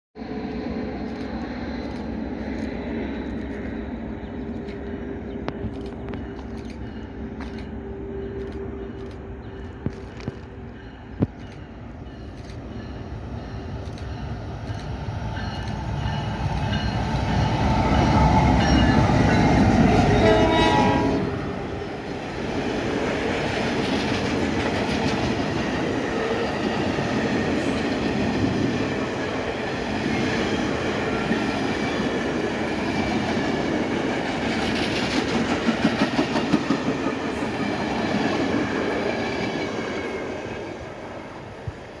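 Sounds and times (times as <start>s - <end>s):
train wheel noise: 0.2s - 42.0s
clickety-clack over rail joints: 1.0s - 20.9s, 22.3s - 40.7s
locomotive horn: 17.6s - 21.7s.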